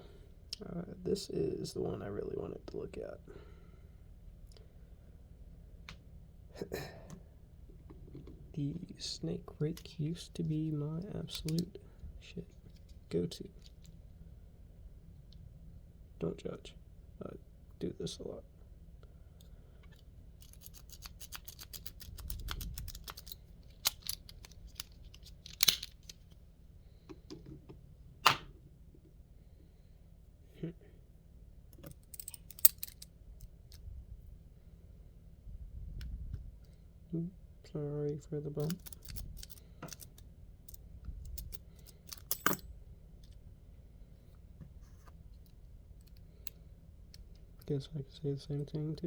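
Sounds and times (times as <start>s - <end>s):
lock pick raking metallic clicks: 20.4s - 26.2s, 31.8s - 33.1s, 38.6s - 42.6s.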